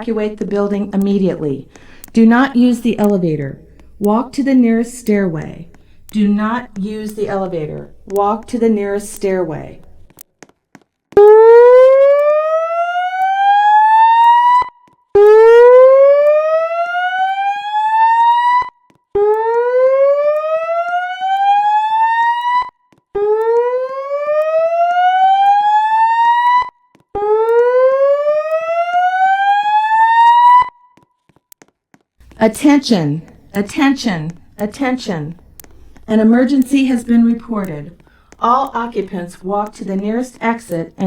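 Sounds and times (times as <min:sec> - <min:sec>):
rising whoop alarm tone: 0:11.2 - 0:30.7.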